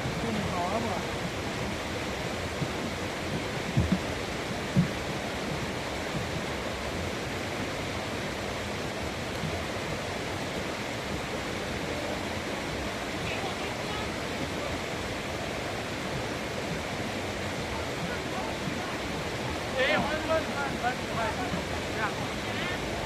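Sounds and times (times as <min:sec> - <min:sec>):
low thumps: 0:00.0 - 0:08.0
steady rushing noise: 0:00.0 - 0:23.0.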